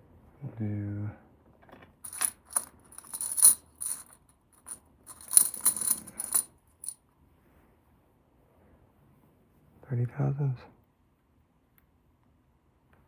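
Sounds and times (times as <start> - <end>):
small metal objects clinking: 2.1 - 7.0.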